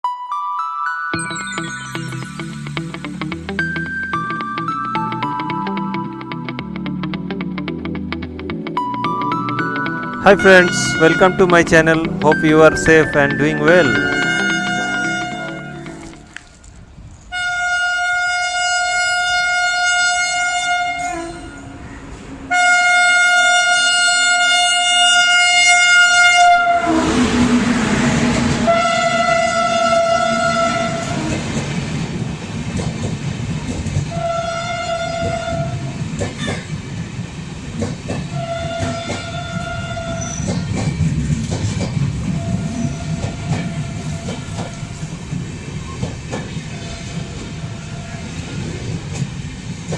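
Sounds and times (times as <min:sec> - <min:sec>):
train rumbling past: 0:08.8 - 0:49.9
locomotive horn honking: 0:10.2 - 0:16.4, 0:17.3 - 0:31.4, 0:34.1 - 0:35.9, 0:38.3 - 0:40.5, 0:42.3 - 0:44.7
wheels clacking over rail joints: 0:30.0 - 0:49.9.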